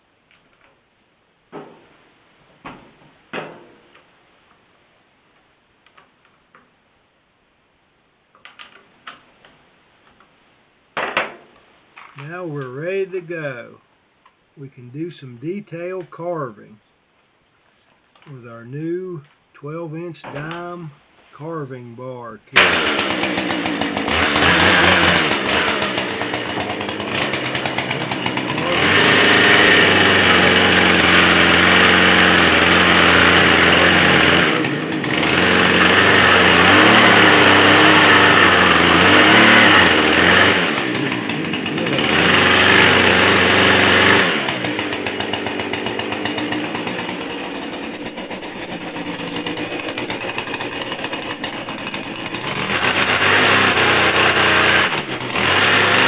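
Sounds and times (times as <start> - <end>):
chainsaw revving and idling: 12.0 - 13.7, 14.6 - 16.7, 18.2 - 21.7, 22.5 - 56.0.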